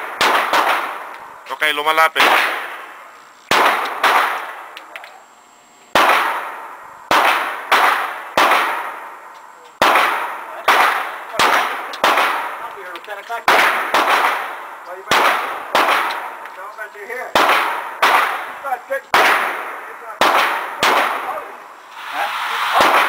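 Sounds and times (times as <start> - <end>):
pistol shots echoing: 0.0 - 1.3, 2.2 - 4.8, 6.0 - 9.2, 9.8 - 16.6, 17.2 - 21.6, 22.8 - 23.0.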